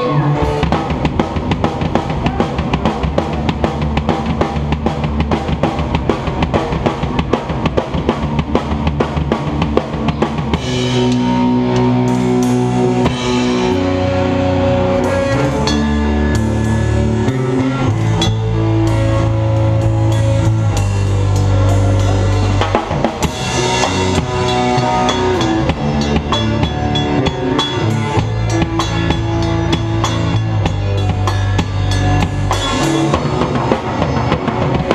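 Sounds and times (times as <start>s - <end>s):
rock music with drums: 0.0s - 34.9s.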